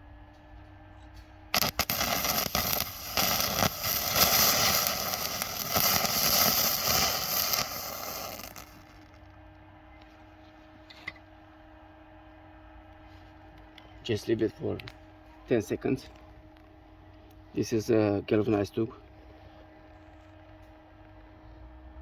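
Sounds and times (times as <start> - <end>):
arc striking cracks: 1.6 - 9.1
welding arc crackling: 1.6 - 9.2.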